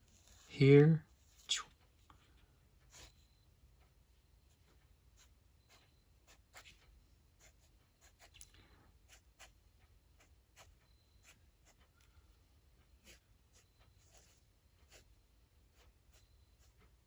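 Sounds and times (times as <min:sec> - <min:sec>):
pen scratching on paper: 0:00.1 - 0:00.5, 0:02.8 - 0:03.3, 0:04.5 - 0:08.4, 0:09.0 - 0:12.0, 0:13.0 - 0:17.0.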